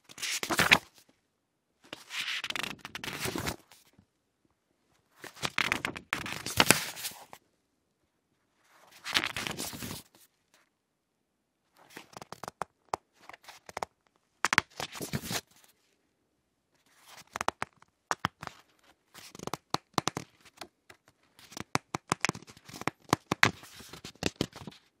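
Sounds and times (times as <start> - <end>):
book pages turning: 0.1 - 1.0, 1.9 - 3.9, 5.2 - 7.4, 8.8 - 10.2, 11.8 - 13.9, 14.5 - 15.7, 16.9 - 24.8.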